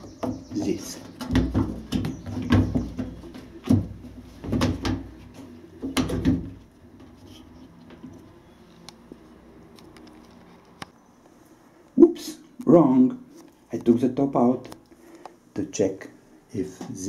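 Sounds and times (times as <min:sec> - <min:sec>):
washing machine panels clattering: 0:00.2 - 0:06.6.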